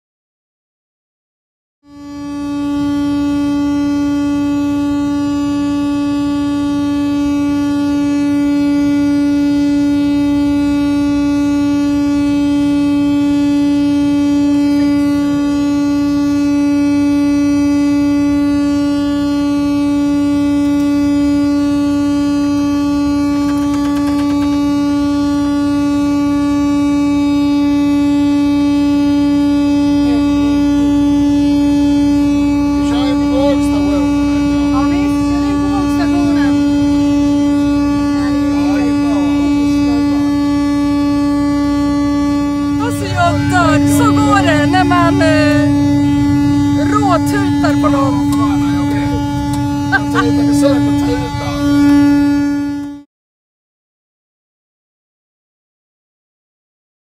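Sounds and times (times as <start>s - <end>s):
truck air horn blaring: 1.8s - 53.1s.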